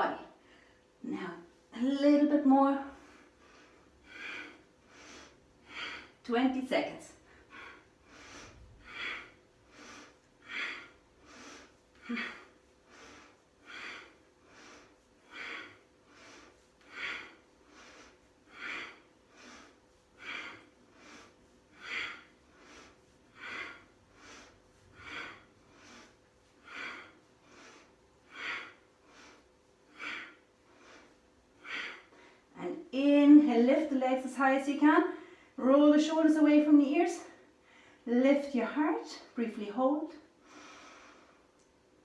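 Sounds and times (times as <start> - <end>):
person breathing forcefully: 2.9 - 6.2, 7.2 - 32.5.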